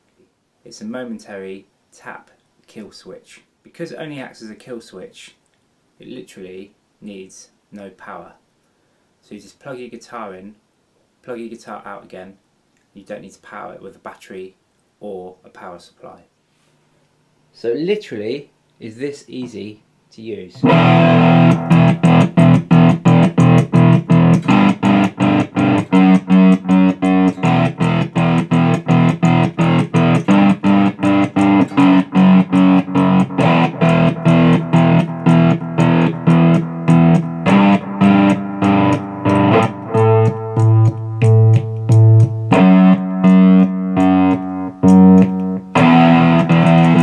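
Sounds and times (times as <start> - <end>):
stuttering electric guitar chords: 20.6 - 47.0.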